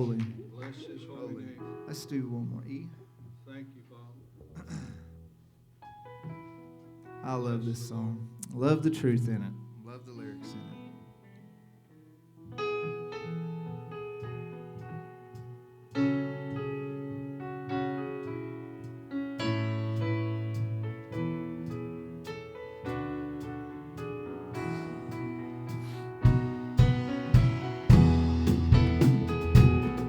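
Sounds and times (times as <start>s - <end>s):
electric piano chords: 10.4s - 30.0s
band playing: 22.3s - 30.0s.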